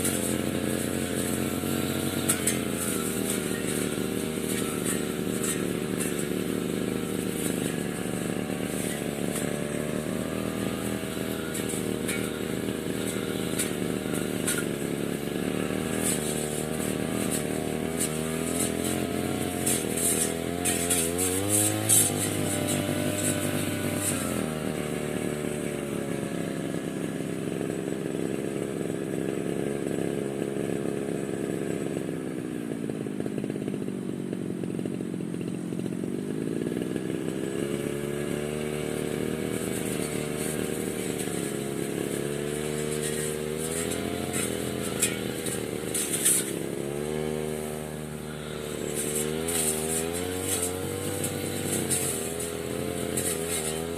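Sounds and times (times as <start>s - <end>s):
brush cutter engine running: 0.0s - 53.9s.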